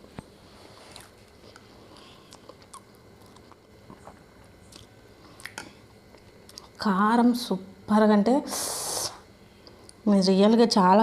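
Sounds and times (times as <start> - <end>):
person chewing: 0.7 - 6.8.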